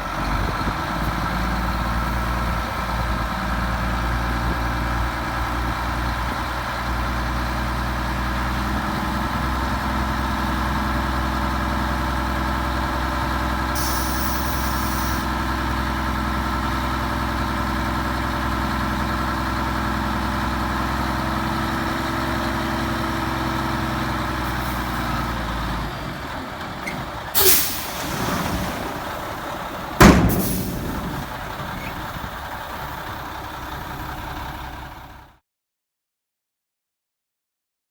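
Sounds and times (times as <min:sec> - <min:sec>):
diesel truck idling: 0:00.0 - 0:35.4
air-brake hiss: 0:13.8 - 0:15.3, 0:27.4 - 0:28.2, 0:30.2 - 0:31.0.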